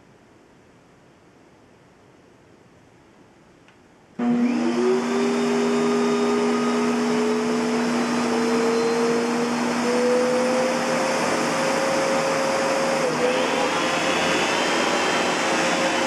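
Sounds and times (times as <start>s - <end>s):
vacuum cleaner motor whine: 4.2s - 16.0s.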